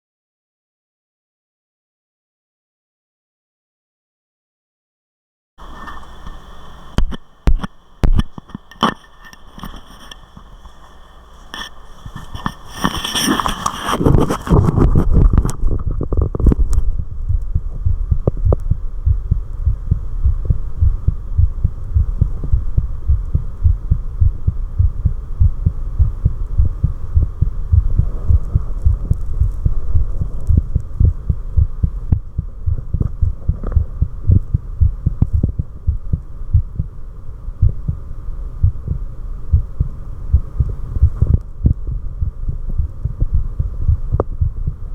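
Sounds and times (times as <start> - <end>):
heartbeat thumps: 7.0 - 8.3, 14.0 - 37.0, 37.6 - 44.9
scraping noise: 8.5 - 17.0.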